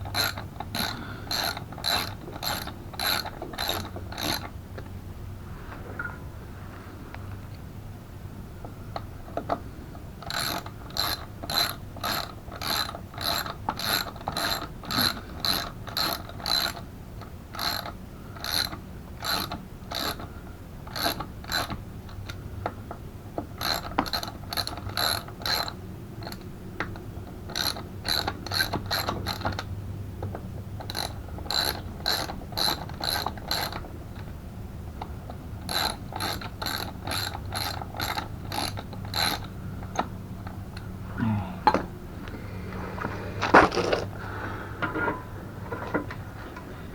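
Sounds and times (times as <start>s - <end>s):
ratchet wrench clicking: 0.0s - 4.5s, 10.2s - 16.8s, 17.6s - 20.3s, 20.9s - 22.4s, 23.6s - 29.7s, 30.8s - 34.3s, 35.6s - 40.1s.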